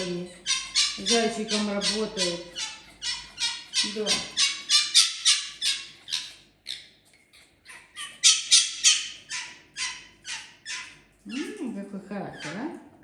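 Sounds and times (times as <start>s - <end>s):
fox shrill squawking calls: 0.4s - 6.8s, 7.7s - 11.0s.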